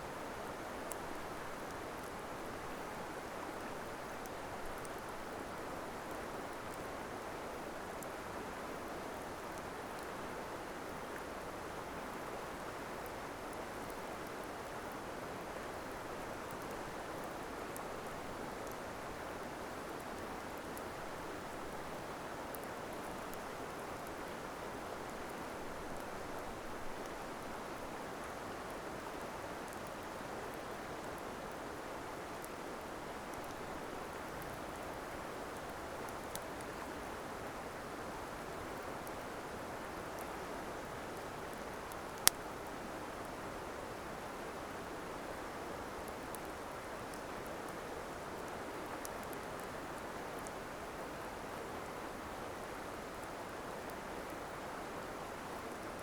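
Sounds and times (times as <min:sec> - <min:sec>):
campfire crackling and popping: 0:15.6 - 0:27.4, 0:32.2 - 0:36.8, 0:41.1 - 0:42.7, 0:46.3 - 0:47.2, 0:48.4 - 0:49.8.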